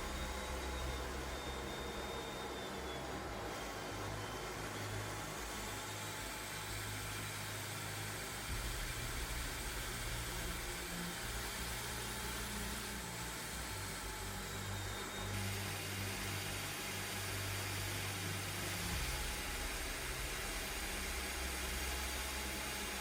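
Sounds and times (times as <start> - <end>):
constant hiss: 0.0 - 2.0.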